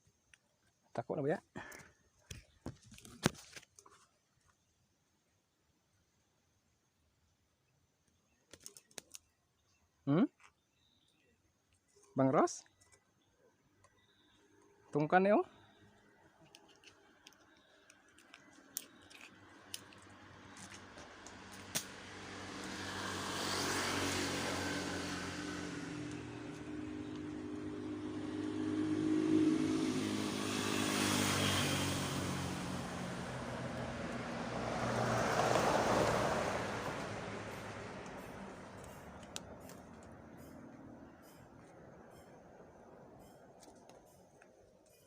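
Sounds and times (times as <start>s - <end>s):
vehicle engine passing: 19.2s - 43.4s.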